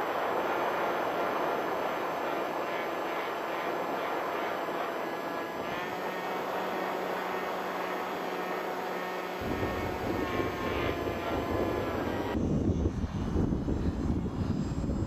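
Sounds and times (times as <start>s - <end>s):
model plane motor whining: 0.1s - 15.0s
wind buffeting microphone: 9.4s - 15.0s.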